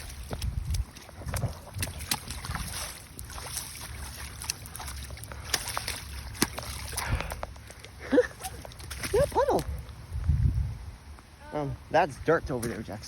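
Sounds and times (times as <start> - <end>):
wind rumble on microphone: 0.0 - 5.3, 8.4 - 11.3.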